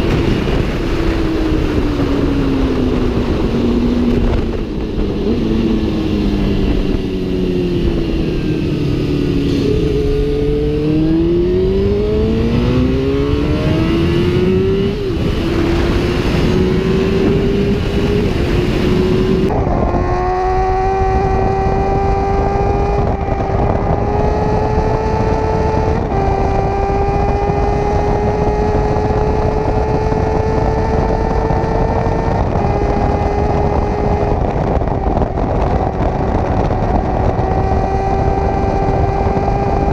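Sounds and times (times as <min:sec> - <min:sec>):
heavy wind rush: 0:00.0 - 0:39.9
motorcycle engine at speed: 0:00.0 - 0:39.9.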